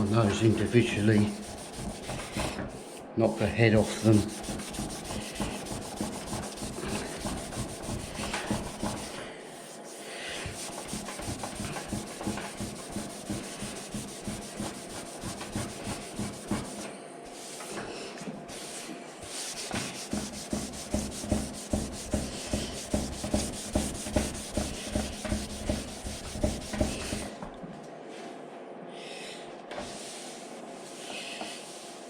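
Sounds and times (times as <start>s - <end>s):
sandpaper rubbing painted panel: 0.0s - 17.8s, 18.5s - 27.3s, 29.8s - 32.0s.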